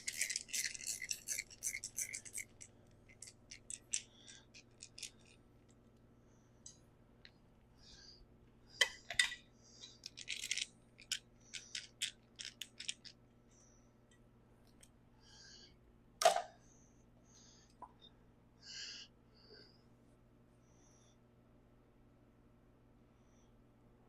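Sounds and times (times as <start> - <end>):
metal parts clicking and clinking: 0.0 - 5.4, 8.8 - 13.2.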